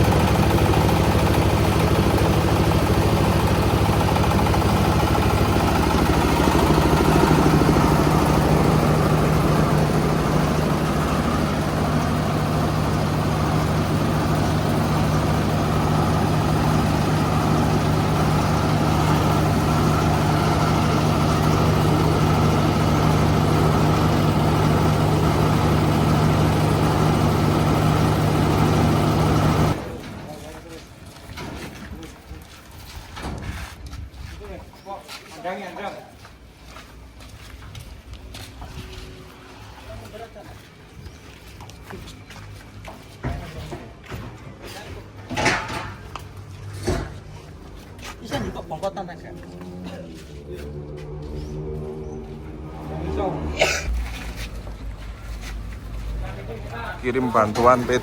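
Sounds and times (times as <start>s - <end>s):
mechanical rattle and whir: 0.0s - 30.4s
corn sheller engine drone: 0.0s - 30.6s, 48.3s - 58.0s.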